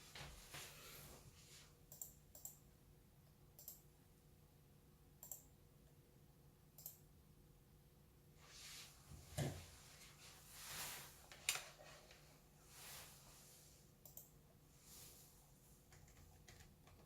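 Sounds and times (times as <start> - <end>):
faint clicks: 5.2 - 5.5, 14.0 - 14.3.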